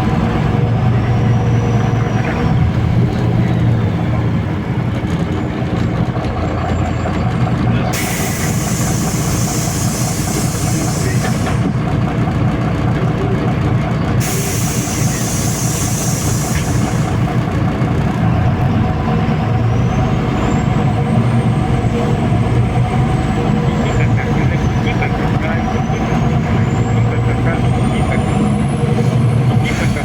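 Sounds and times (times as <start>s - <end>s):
bus diesel engine running: 0.0s - 30.0s
compressed air hissing: 8.0s - 11.6s, 14.2s - 17.2s.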